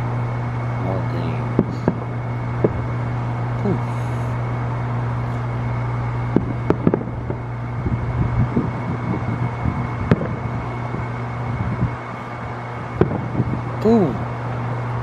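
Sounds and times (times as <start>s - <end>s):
steady low hum: 0.0s - 15.0s
distant fireworks bangs: 1.6s - 2.9s.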